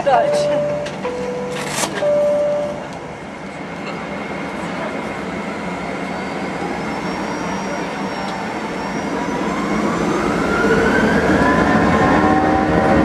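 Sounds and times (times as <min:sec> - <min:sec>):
jet engines rumbling and whining: 0:00.0 - 0:13.0.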